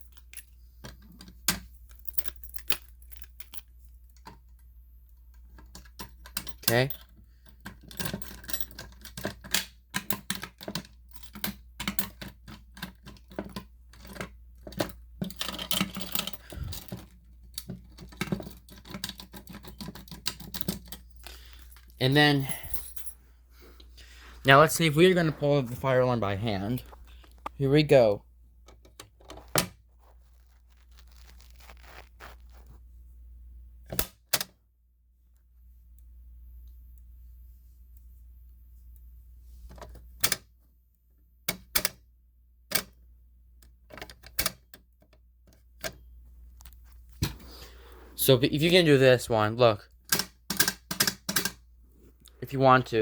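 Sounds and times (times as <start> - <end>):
faint steady low hum: 0.0 - 30.9, 32.4 - 53.0
rustling handling noise: 12.4 - 28.1, 28.8 - 33.0.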